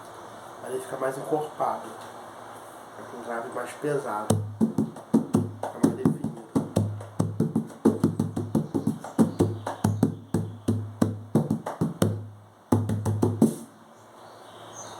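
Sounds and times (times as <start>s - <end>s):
hand drum played by hand: 4.3s - 13.7s.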